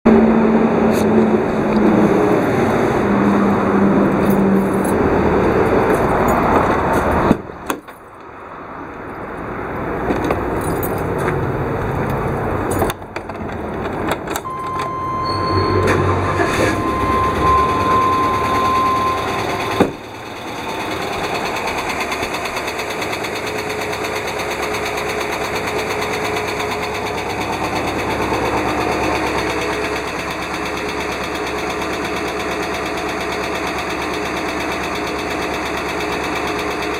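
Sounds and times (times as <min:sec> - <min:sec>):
bus engine running: 0:00.1 - 0:36.9
steady high tone: 0:14.4 - 0:21.7.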